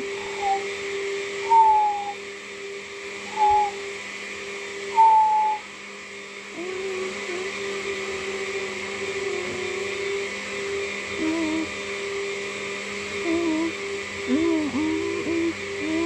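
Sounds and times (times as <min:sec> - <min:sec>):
electronic drone of held tones: 0:00.0 - 0:02.2, 0:03.2 - 0:03.8, 0:04.9 - 0:05.7, 0:06.5 - 0:11.8, 0:13.2 - 0:16.0
loud whistle-like falling tone: 0:01.4 - 0:02.2, 0:03.3 - 0:03.8, 0:04.9 - 0:05.6.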